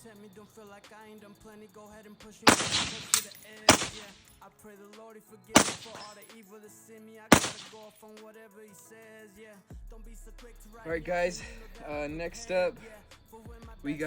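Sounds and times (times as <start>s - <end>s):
suppressed rifle shots: 2.5s - 4.2s, 5.6s - 6.2s, 7.3s - 7.9s
sharp crack: 2.5s - 4.3s, 5.6s - 6.2s, 7.3s - 7.9s.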